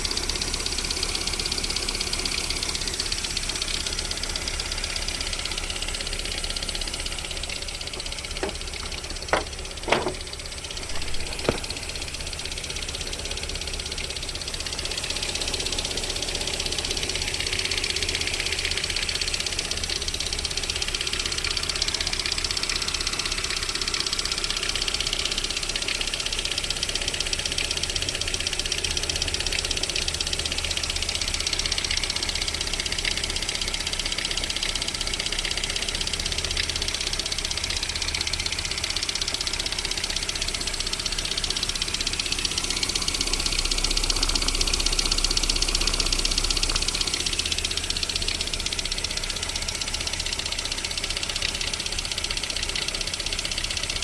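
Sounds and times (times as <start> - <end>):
car engine knocking: 0.0 - 54.0.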